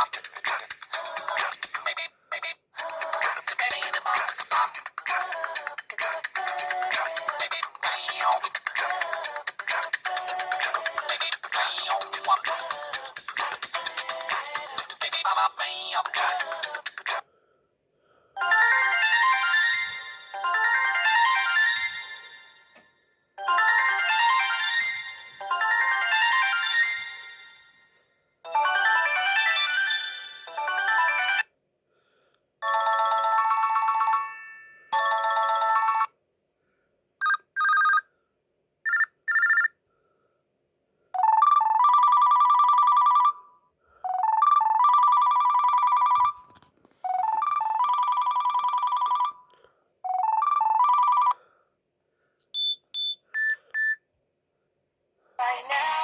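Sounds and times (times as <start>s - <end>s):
phone ringtone melodies: 18.4s - 22.8s, 23.4s - 31.5s, 32.6s - 36.1s, 38.9s - 39.7s, 41.2s - 43.5s, 44.1s - 46.5s, 47.1s - 49.5s, 50.1s - 51.4s
quick beeps: 52.6s - 54.0s.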